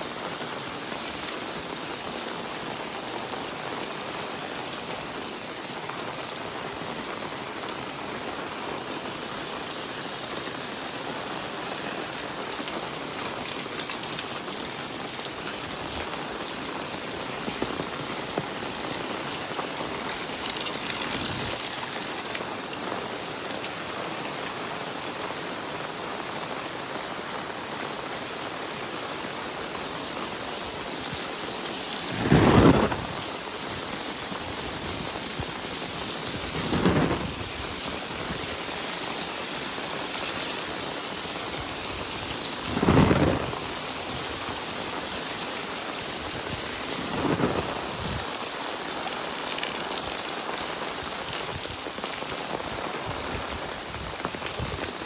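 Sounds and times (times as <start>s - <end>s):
rain pattering: 0.0s - 55.0s.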